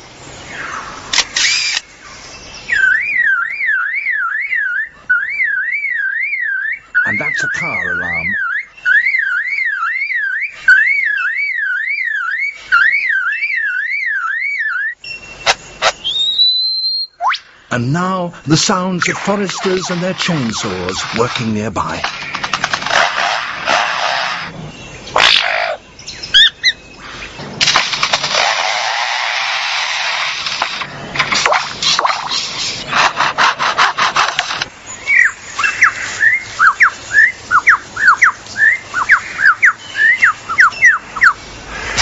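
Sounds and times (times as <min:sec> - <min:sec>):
sharp clicks: 0:01.1 - 0:01.9, 0:19.0 - 0:23.8
bird mimicking car alarm: 0:02.6 - 0:17.4, 0:18.5 - 0:27.0, 0:35.0 - 0:41.4.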